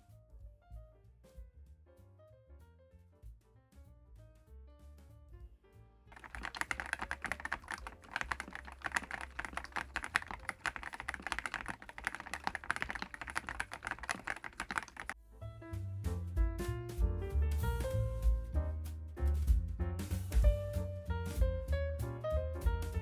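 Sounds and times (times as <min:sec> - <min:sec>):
fast mechanical keyboard typing: 0:06.2 - 0:15.2.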